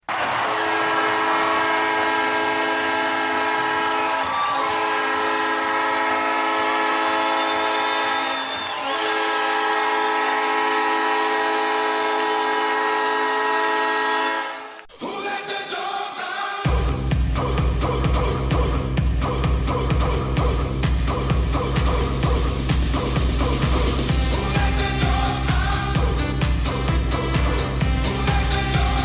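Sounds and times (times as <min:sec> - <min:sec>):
multi-tone air horn: 0:00.3 - 0:14.8, 0:21.5 - 0:29.0.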